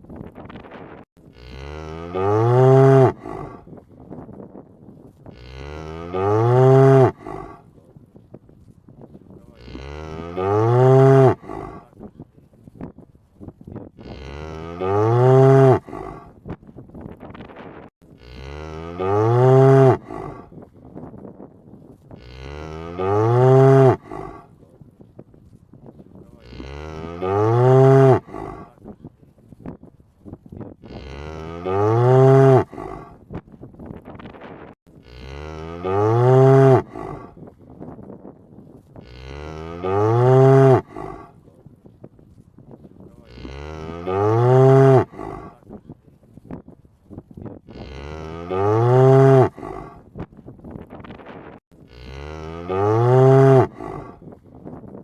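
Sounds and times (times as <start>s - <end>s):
cow mooing: 1.3s - 3.6s, 5.3s - 7.6s, 9.5s - 11.9s, 14.0s - 16.3s, 18.1s - 20.5s, 22.1s - 24.5s, 26.4s - 28.8s, 30.8s - 33.2s, 35.0s - 37.4s, 39.0s - 41.4s, 43.2s - 45.6s, 47.7s - 50.0s, 51.9s - 54.3s.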